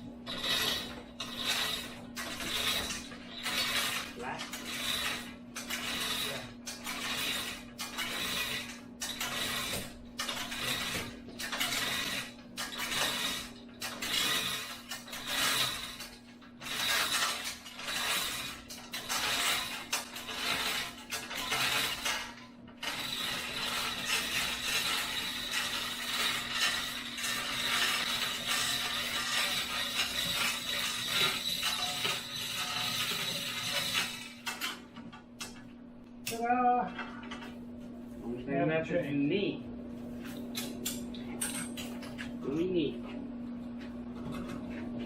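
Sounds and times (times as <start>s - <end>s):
continuous scraping: 0.0s - 45.0s
steady low hum: 0.0s - 45.0s
mechanical ratcheting: 0.3s - 35.6s.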